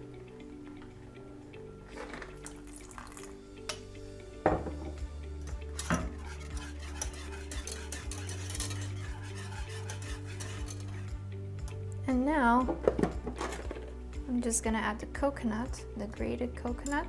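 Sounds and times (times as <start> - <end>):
background music: 0.0 - 17.0
utensil stirring and scraping pan: 5.6 - 11.2
utensil clinking against pan: 5.8 - 11.1.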